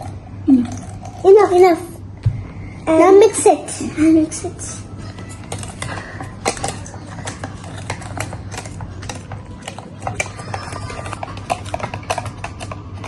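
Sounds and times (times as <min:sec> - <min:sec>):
liquid being stirred: 0:02.9 - 0:13.0.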